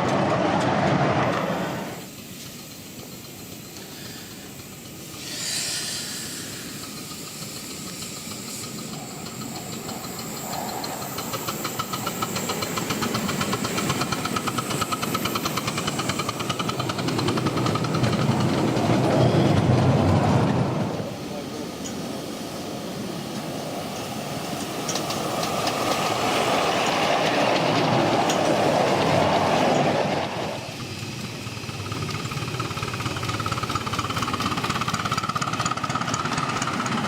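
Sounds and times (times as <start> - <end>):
fast even train beat: 0.0 - 21.6, 24.3 - 37.0
short hiss: 1.9 - 14.2
miniature train running: 2.0 - 37.0.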